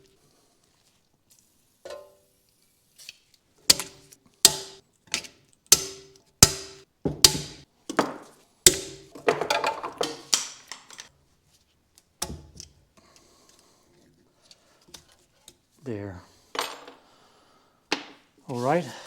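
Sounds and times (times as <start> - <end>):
hammer striking metal: 3.7 - 4.8, 5.7 - 7.6.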